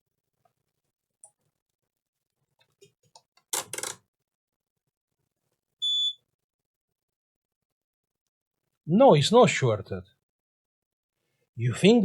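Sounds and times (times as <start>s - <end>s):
multimeter beep: 5.8s - 6.2s.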